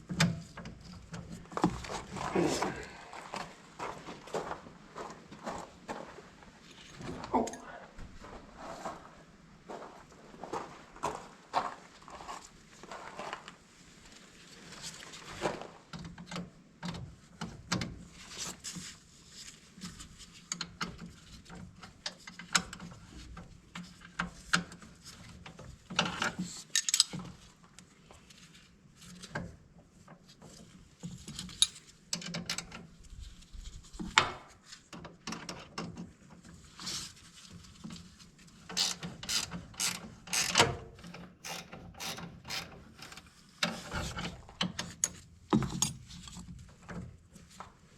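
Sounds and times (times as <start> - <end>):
ratchet wrench clicking: 38.8 - 43.2.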